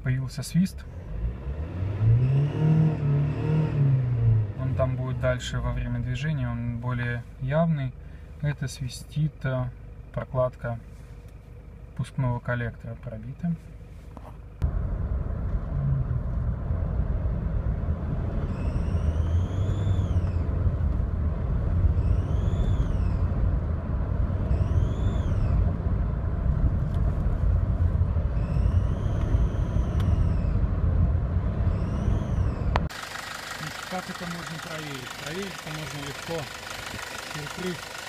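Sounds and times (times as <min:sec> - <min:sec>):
car engine rumbling: 0:00.0 - 0:38.0
whistle rising and falling: 0:18.4 - 0:20.5, 0:21.9 - 0:23.3, 0:24.5 - 0:25.6, 0:28.3 - 0:30.6, 0:31.6 - 0:32.8.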